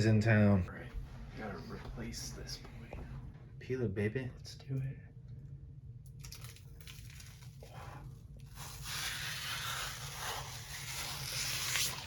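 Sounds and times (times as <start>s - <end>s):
plastic film peeling crackle: 8.4s - 12.0s.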